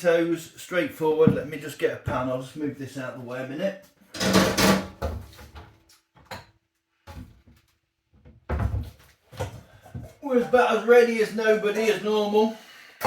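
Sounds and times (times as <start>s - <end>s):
cupboard opening and shutting: 4.2s - 5.8s, 8.3s - 9.6s.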